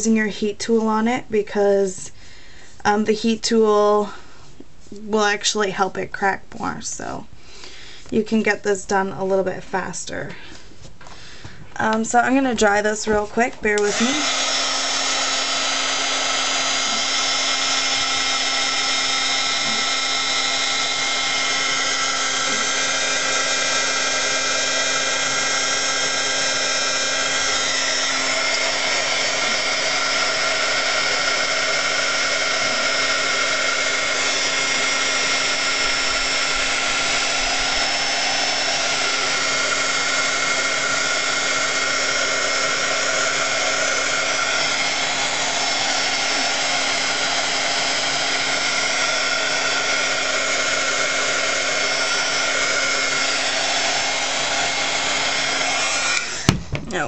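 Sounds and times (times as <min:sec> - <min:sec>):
heat gun whining and hissing: 0:11.8 - 0:57.0.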